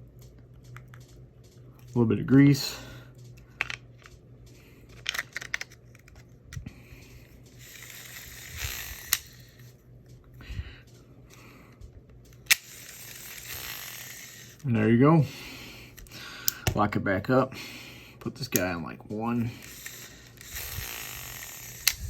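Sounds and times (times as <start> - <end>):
fishing reel parts clicking: 3.4 - 4.2, 4.9 - 6.3, 7.0 - 9.8, 12.3 - 14.8, 19.5 - 22.0.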